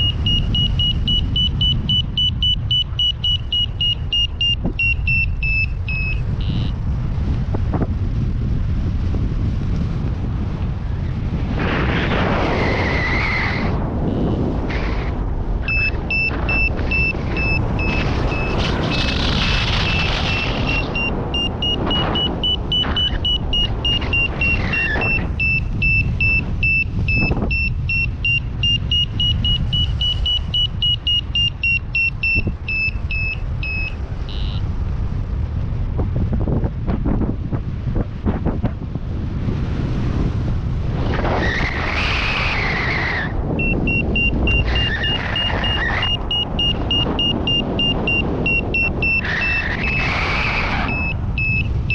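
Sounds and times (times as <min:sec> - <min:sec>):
variometer rapid high beeps: 0:00.0 - 0:06.8, 0:15.6 - 0:34.6, 0:43.6 - 0:51.9
wind rumble on microphone: 0:00.0 - 0:51.9.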